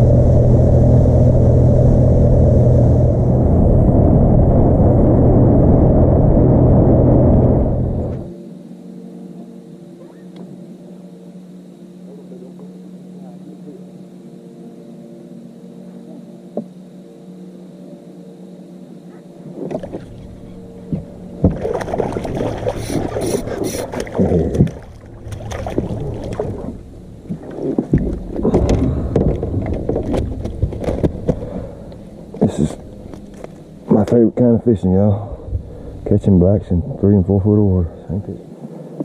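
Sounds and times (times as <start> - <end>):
small boat motor humming: 0.0 - 39.0
knocking and rustling in boat: 19.7 - 31.6.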